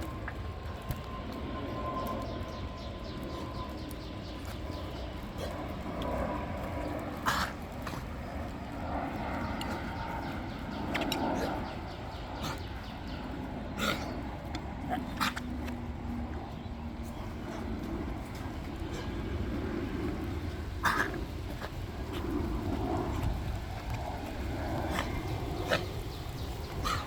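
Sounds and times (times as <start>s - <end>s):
dog coughing: 7.2s - 8.0s, 13.8s - 14.2s, 20.8s - 21.7s.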